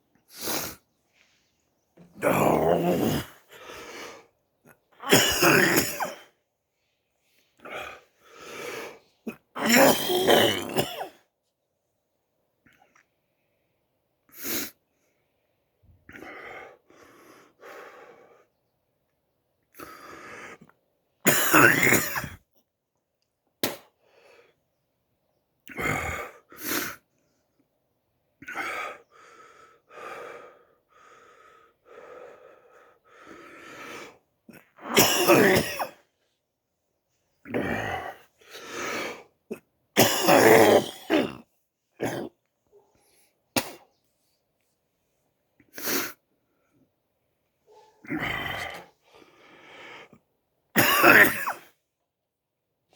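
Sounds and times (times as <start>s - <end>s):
person coughing: 5.0s - 6.3s, 9.6s - 11.2s, 21.3s - 22.4s, 34.8s - 36.0s, 40.0s - 41.4s, 50.8s - 51.7s
throat clearing: 9.3s - 11.2s, 34.5s - 36.0s, 39.5s - 42.4s.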